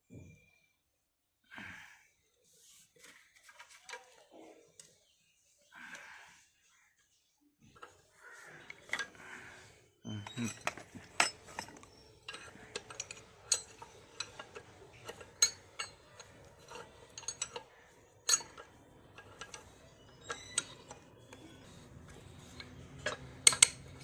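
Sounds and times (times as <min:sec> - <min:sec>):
metal tools clinking and tapping: 0:08.6 - 0:09.4, 0:10.2 - 0:24.0.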